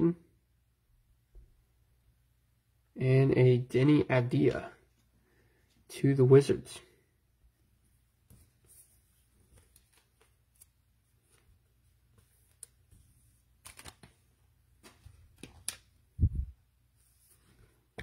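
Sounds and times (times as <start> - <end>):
cards rustling and clicking: 8.3 - 16.0.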